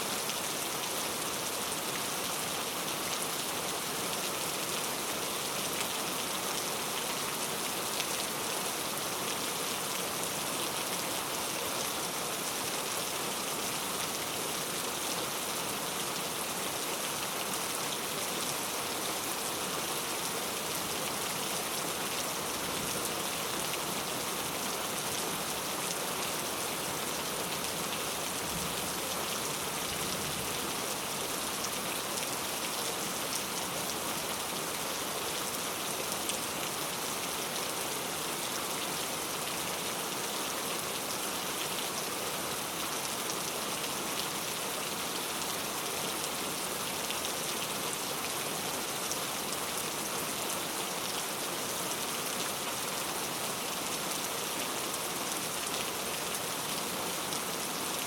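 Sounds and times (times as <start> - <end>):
rain pattering on a surface: 0.1 - 58.0.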